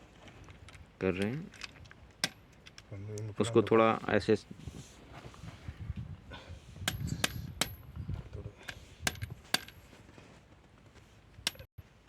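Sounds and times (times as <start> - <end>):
handling rustle: 3.5 - 5.8.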